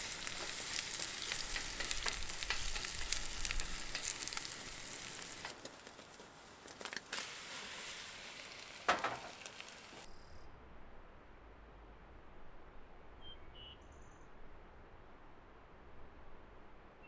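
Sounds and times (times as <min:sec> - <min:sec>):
food sizzling in a pan: 0:00.0 - 0:06.2, 0:06.8 - 0:10.1.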